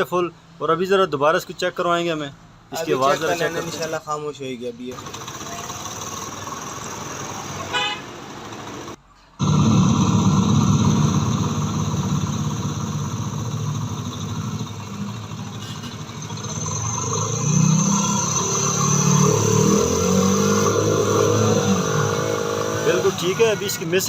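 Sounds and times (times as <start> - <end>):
motorcycle engine running steadily: 5.0 - 16.6.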